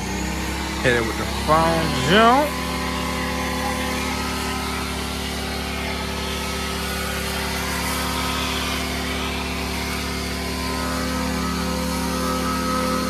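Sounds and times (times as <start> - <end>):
two-stroke engine idling: 0.0 - 12.8.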